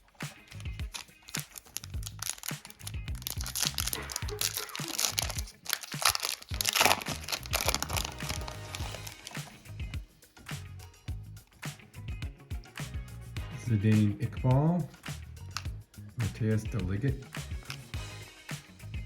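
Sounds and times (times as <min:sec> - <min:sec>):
wrapper tearing and crinkling: 0:00.0 - 0:09.6, 0:17.6 - 0:17.9
background music with low beat: 0:00.0 - 0:19.0.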